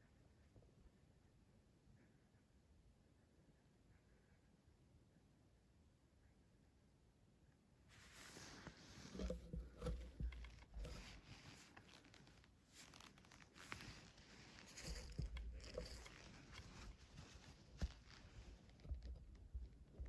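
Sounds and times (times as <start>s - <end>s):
rustling and handling noise: 7.9s - 20.0s.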